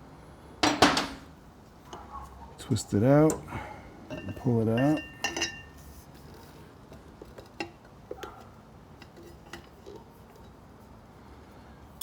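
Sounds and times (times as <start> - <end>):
metal ringing: 0.6 - 1.3.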